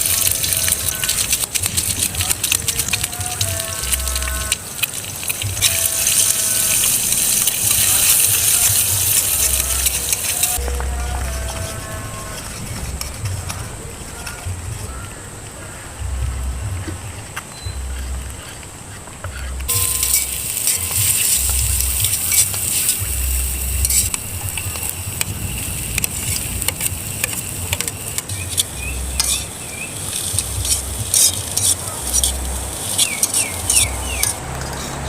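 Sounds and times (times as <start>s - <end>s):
vegetables sizzling in a pan: 0.0s - 10.6s, 19.7s - 34.3s
utensil stirring against pan: 0.0s - 14.4s, 19.7s - 35.0s.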